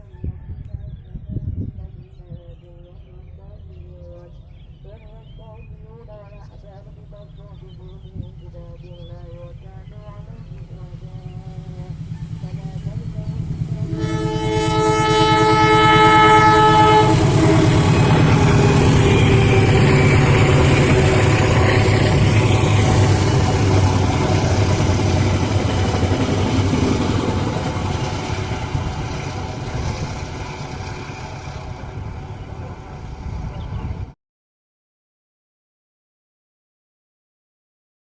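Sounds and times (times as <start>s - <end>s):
passenger train running past: 4.8s - 34.2s
diesel locomotive horn: 9.7s - 34.0s.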